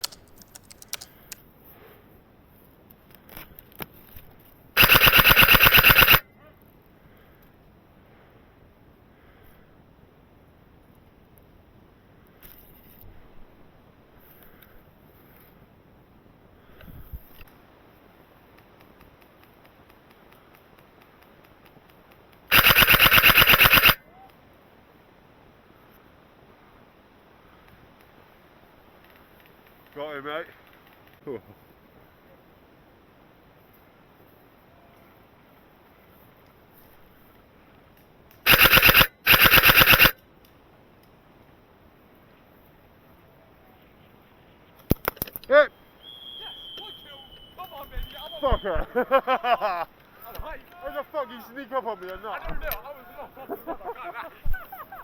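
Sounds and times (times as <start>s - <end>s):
sharp clicks: 0.0s - 1.4s, 4.8s - 6.2s, 22.5s - 24.0s, 38.4s - 40.2s, 44.8s - 45.5s
airsoft gun full-auto burst: 4.8s - 6.2s, 22.5s - 24.0s, 38.5s - 40.2s.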